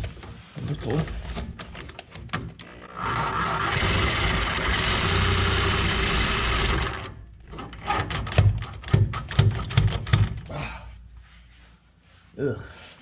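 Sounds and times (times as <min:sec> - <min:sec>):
reciprocating saw cutting metal pipe: 0:03.0 - 0:07.1
irregular knocks and thumps: 0:07.5 - 0:10.5.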